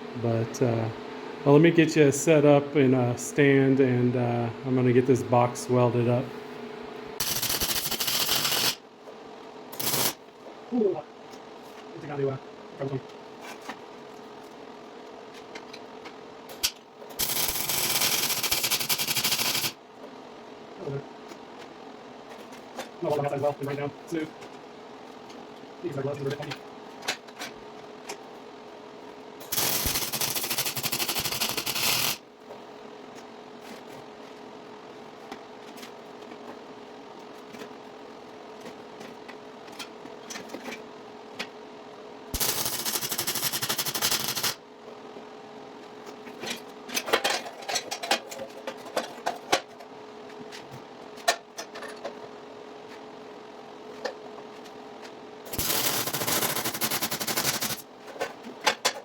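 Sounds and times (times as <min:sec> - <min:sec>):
cooling fan humming: 0:00.0 - 0:59.0
welding arc crackling: 0:07.2 - 0:08.8, 0:09.7 - 0:10.2, 0:16.6 - 0:19.8, 0:29.4 - 0:32.2, 0:42.4 - 0:44.6, 0:55.5 - 0:57.8.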